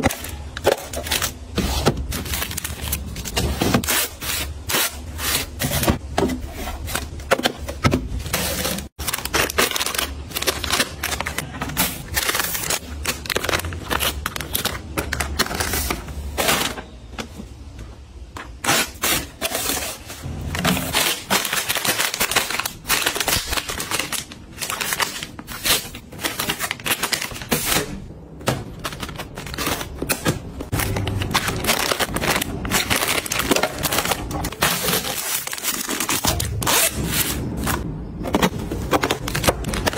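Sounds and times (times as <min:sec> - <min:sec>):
items clicking tapping and rustling: 0:20.5 - 0:36.6, 0:37.7 - 0:39.9.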